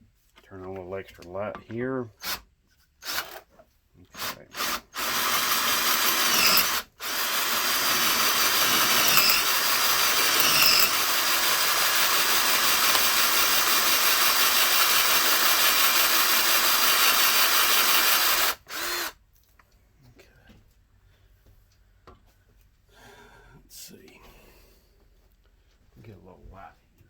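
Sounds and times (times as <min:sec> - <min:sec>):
electric drill drilling into metal: 0:03.0 - 0:03.4, 0:04.2 - 0:19.2.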